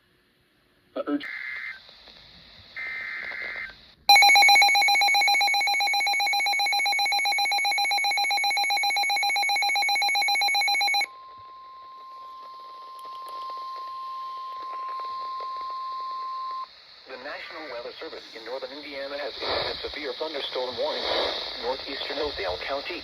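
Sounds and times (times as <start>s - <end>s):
steady alarm tone: 4.1s - 16.7s
faint hiss: 14.6s - 23.0s.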